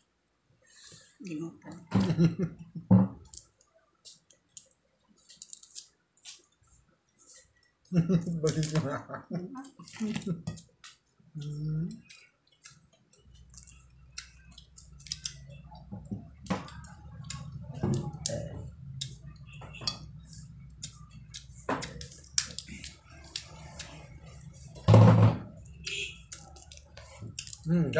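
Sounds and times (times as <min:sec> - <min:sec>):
crab shell cracking: 0:05.3 - 0:06.4, 0:13.5 - 0:15.4, 0:20.8 - 0:23.5.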